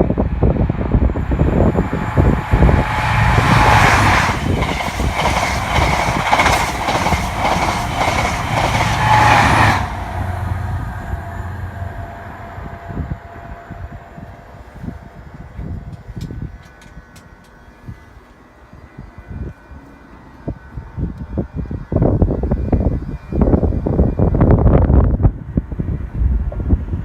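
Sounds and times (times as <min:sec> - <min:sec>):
low train rumble: 0:00.0 - 0:27.0
train wheels clacking over rail joints: 0:03.5 - 0:10.1.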